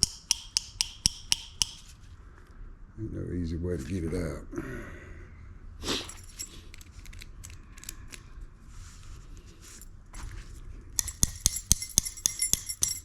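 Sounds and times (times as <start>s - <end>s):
sharp metallic clinks: 6.0s - 6.6s, 11.0s - 13.0s
metal pick scraping in lock: 11.0s - 13.0s.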